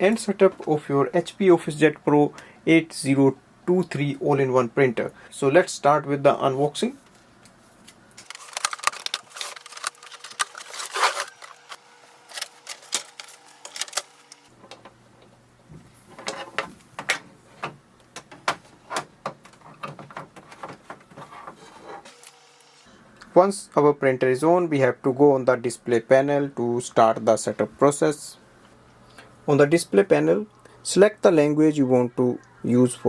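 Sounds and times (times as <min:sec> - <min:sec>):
cardboard and plastic rustling: 0:07.7 - 0:14.5.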